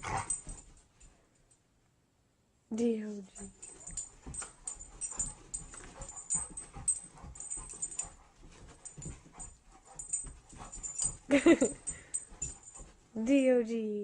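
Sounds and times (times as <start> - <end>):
dog scuffling: 3.4 - 13.4
dog panting hard: 3.6 - 13.1.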